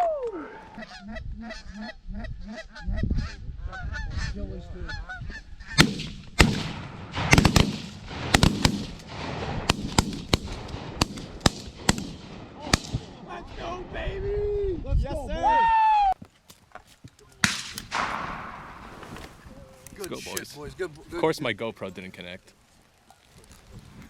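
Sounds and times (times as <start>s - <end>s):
shotgun blasts: 5.7s - 13.3s, 17.4s - 19.1s.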